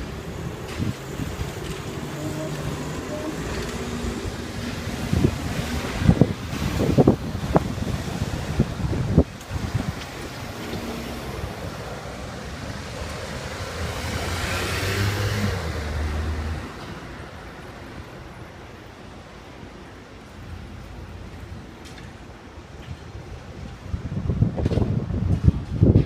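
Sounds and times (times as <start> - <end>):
motor vehicle passing by: 10.4 - 16.8.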